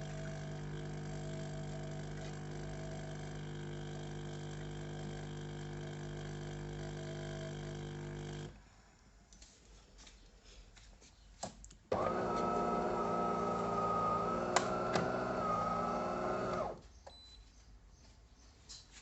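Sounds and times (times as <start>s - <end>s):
coffee machine humming: 0.0s - 8.6s, 11.9s - 16.8s.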